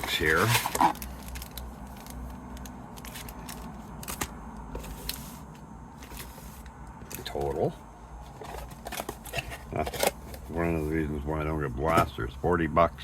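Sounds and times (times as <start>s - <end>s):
card packs handled clicks and taps: 0.0s - 5.2s
low steady hum: 0.0s - 13.0s.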